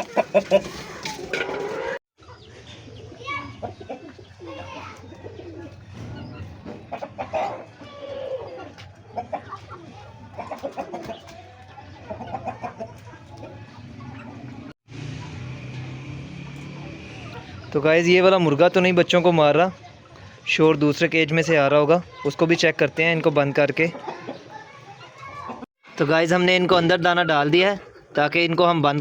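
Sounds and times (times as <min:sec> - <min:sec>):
chickens clucking: 0:00.0 - 0:15.8, 0:16.5 - 0:29.0
chicks cheeping: 0:01.7 - 0:15.4.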